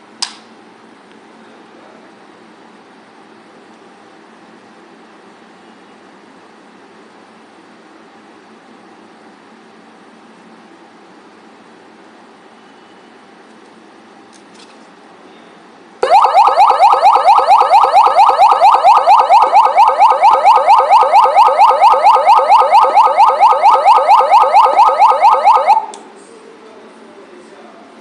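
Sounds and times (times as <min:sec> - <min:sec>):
electronic police siren: 0:16.0 - 0:26.0.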